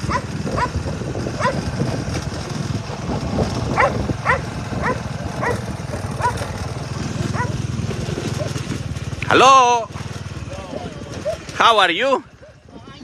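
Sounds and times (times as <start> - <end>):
dog barking: 0.0 - 0.8, 1.4 - 1.6, 3.8 - 6.5, 7.3 - 7.6, 12.3 - 12.7
steady low rumble: 0.0 - 13.0.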